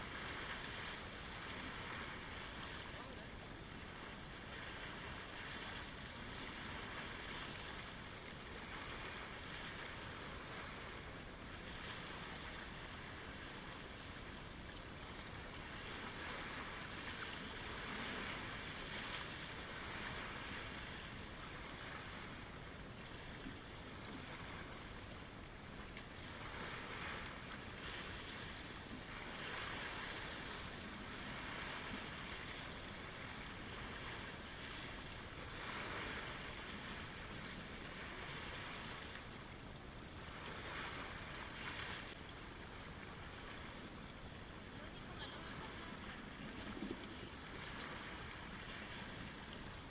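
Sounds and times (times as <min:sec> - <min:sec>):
small waves washing in: 0:00.0 - 0:49.9
steady low rumble: 0:42.1 - 0:49.9.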